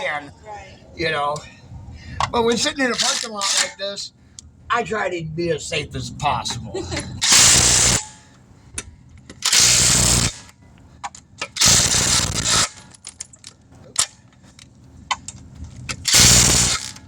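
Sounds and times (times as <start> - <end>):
impact wrench running: 7.2 - 8.2, 9.4 - 10.5, 11.5 - 13.0, 16.1 - 17.0.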